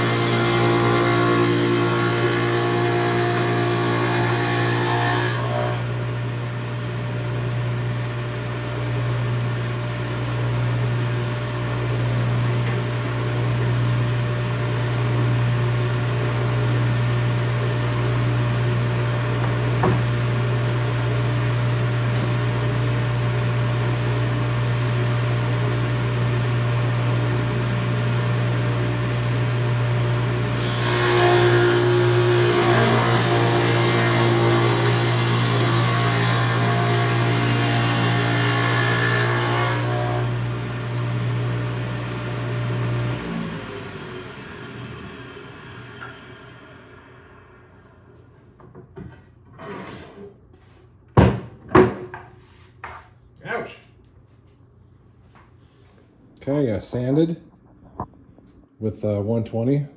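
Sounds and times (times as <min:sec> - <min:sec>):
table saw motor hum: 0:00.0 - 0:06.0, 0:26.9 - 0:48.0.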